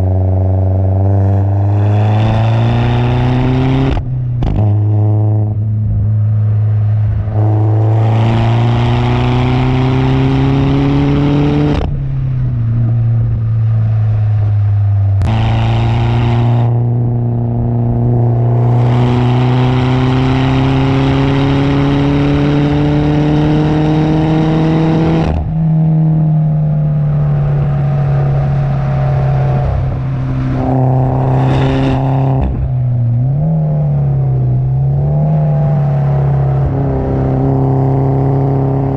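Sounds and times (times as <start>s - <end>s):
car engine revving under load: 0.0s - 38.9s.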